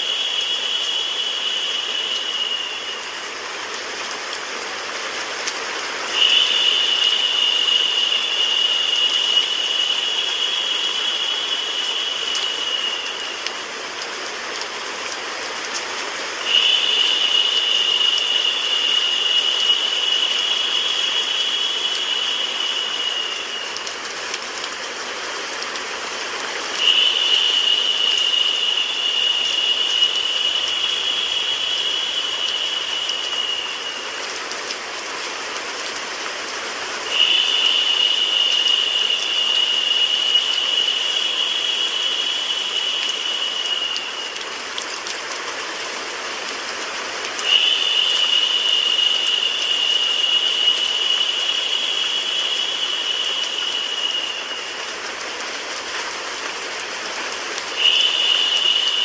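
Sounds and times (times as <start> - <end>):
higher narrow hiss: 0.0 - 4.0
white noise hiss: 0.0 - 59.0.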